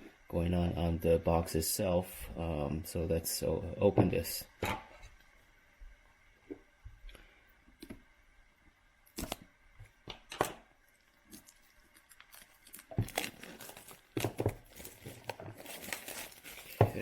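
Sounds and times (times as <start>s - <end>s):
packaging rustling and tearing: 11.0s - 17.0s.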